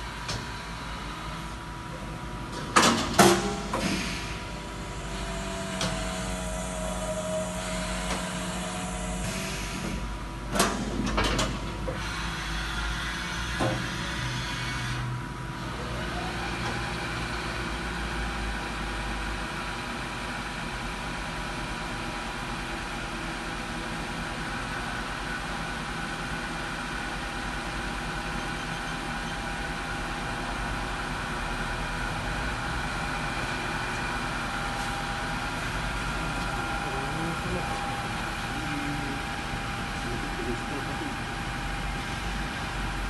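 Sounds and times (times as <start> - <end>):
machine running with mechanical hum: 0.0 - 43.0.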